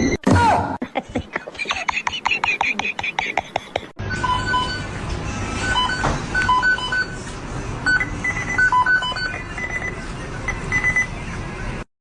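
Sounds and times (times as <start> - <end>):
short electronic beeps: 7.9 - 11.1.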